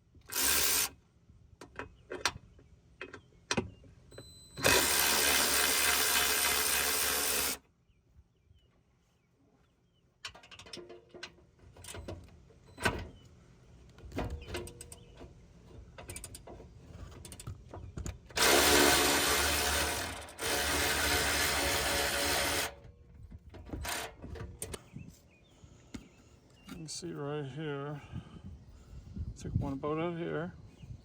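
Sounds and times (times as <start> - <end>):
cordless power tool running: 0.3 - 0.9, 4.6 - 7.6, 18.4 - 22.8.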